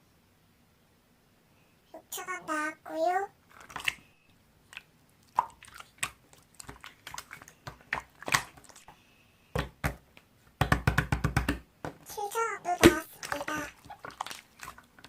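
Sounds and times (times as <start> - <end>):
slime squishing: 3.4 - 9.0, 12.0 - 15.0.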